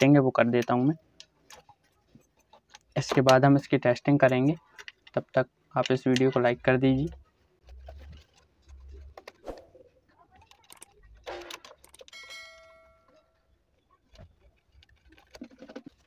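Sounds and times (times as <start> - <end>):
faint clicks of metal parts: 0.0 - 16.0
bright metallic clink: 12.1 - 13.3.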